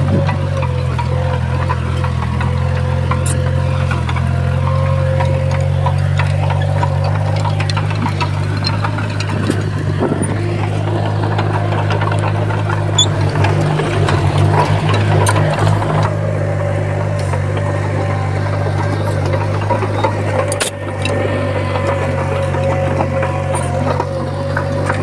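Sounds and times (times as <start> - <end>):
metallic clanks and knocks: 0.0 - 16.3
heavy diesel machinery running: 0.0 - 25.0.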